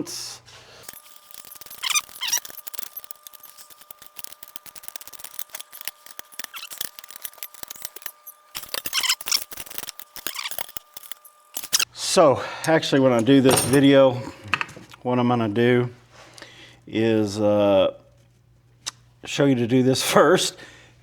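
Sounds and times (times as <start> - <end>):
wrench clicking on bolt: 0.9 - 11.8.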